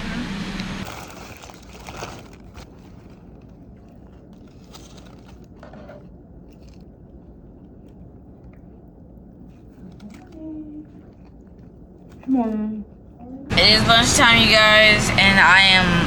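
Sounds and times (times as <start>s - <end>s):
car interior rumble: 0.0s - 0.8s, 13.5s - 16.0s
crunching and rustling clicks: 0.8s - 8.8s.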